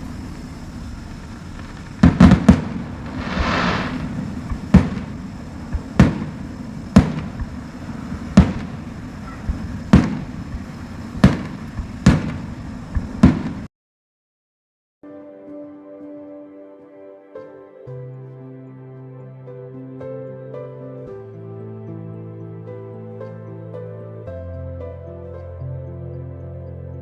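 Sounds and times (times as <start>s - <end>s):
crackling hiss of fireworks: 0.0s - 13.7s
fireworks booming bursts: 1.6s - 13.7s.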